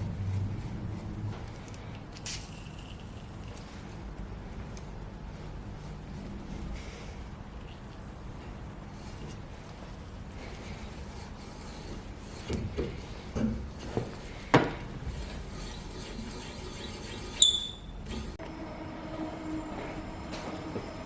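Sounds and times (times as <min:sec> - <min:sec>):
steady mechanical hum: 0:00.0 - 0:21.0
tool knocks and clunks: 0:12.5 - 0:14.8
short high squeak: 0:16.8 - 0:18.2.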